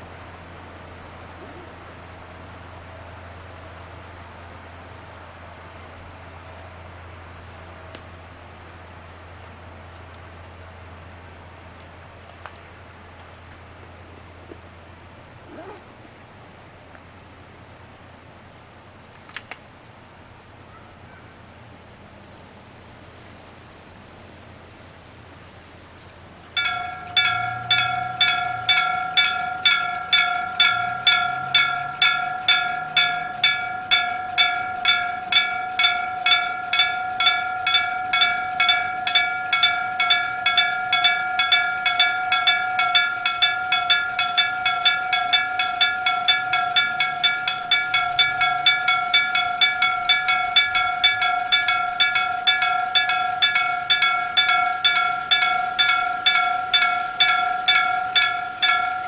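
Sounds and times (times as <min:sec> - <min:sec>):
level crossing bell ringing: 0:26.6 - 0:59.0.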